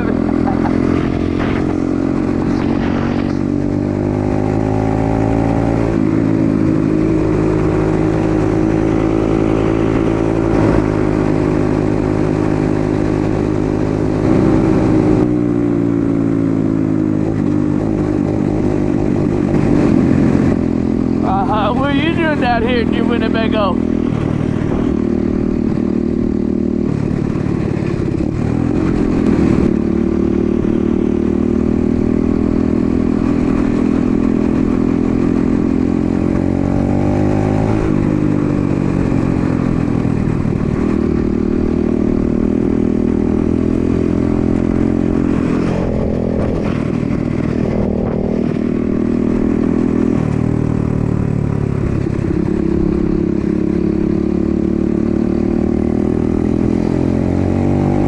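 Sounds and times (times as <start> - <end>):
dirt bike engine revving: 0.0 - 6.0, 28.4 - 58.0.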